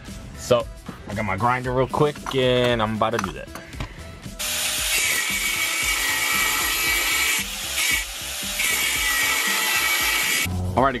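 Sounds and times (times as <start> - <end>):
grinder grinding metal: 4.4 - 10.5.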